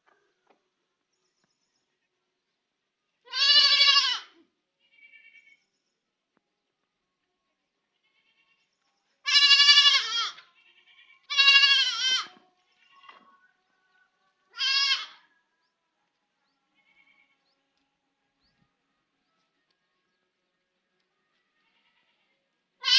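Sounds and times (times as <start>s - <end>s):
baby goat bleating: 3.2s - 5.6s, 9.2s - 13.3s, 14.5s - 15.3s, 21.6s - 22.9s.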